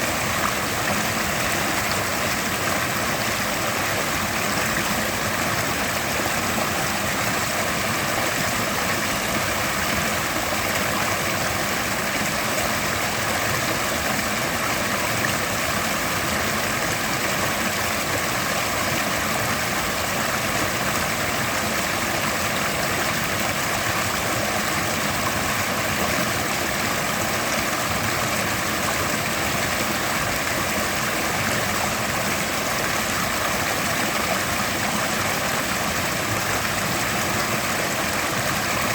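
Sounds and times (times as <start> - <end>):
river rushing over rocks: 0.0 - 38.9.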